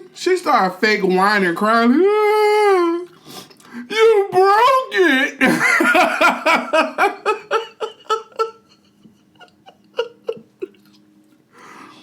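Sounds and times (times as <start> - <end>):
man laughing hard: 5.4 - 10.8.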